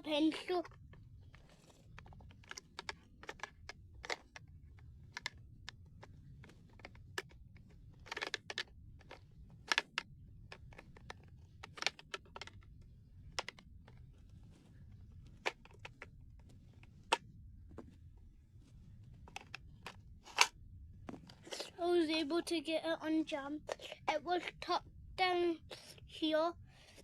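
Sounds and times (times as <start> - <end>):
plastic clicks and taps: 0.4 - 12.7, 13.3 - 14.0, 19.3 - 20.5.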